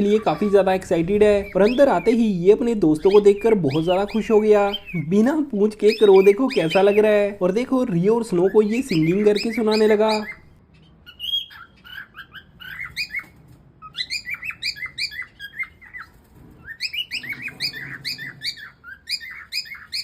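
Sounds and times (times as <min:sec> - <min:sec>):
cockatiel chirping and whistling: 0:08.4 - 0:20.0.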